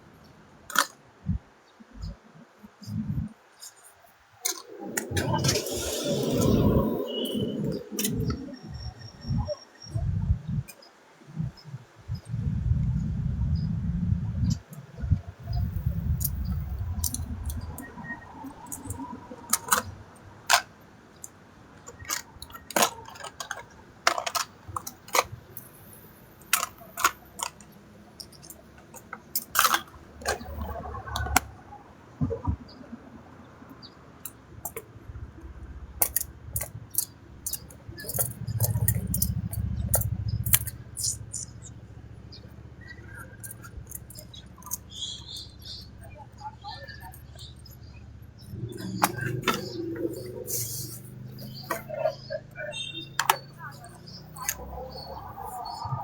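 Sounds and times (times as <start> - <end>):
small hard objects clicking: 15.5 - 31.5, 36.0 - 41.7, 42.4 - 45.9.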